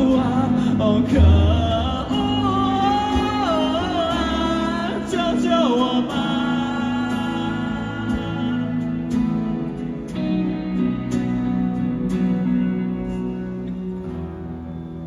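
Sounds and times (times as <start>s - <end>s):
person singing wordless notes: 0.0s - 9.3s
rock band playing: 0.0s - 15.0s.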